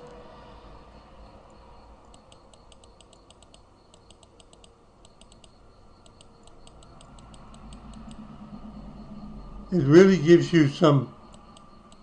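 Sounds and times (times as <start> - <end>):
low hum: 0.0 - 12.0
computer mouse clicking: 2.0 - 8.3, 11.3 - 12.0.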